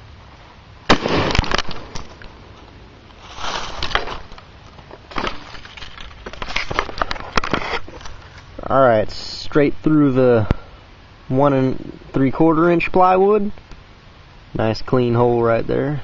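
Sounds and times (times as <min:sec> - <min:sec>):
shotgun blast: 0:00.9 - 0:02.1
handling and crunching noises: 0:00.9 - 0:08.7.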